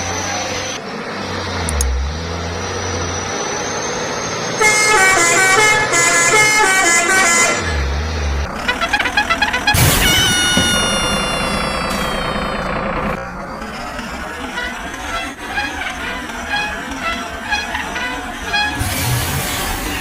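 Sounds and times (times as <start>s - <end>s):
truck multi-tone air horn melody: 4.6s - 7.9s, 8.5s - 13.3s, 14.1s - 20.0s.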